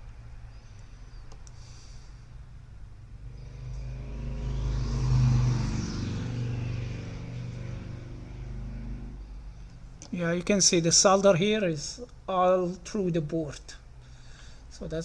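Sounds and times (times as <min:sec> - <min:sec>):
steady low hum: 0:00.0 - 0:15.0
vehicle engine: 0:01.6 - 0:10.1.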